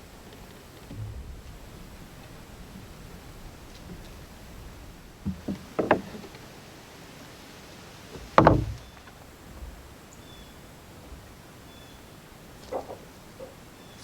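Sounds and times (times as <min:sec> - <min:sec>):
wooden boards knocking: 0:05.2 - 0:06.6, 0:08.1 - 0:09.2.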